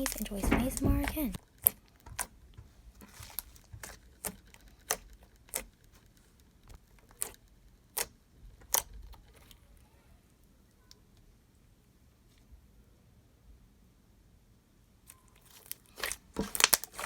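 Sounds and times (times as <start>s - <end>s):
slime clicking and popping: 1.6s - 2.4s, 3.1s - 5.7s, 7.1s - 8.9s, 15.4s - 17.0s.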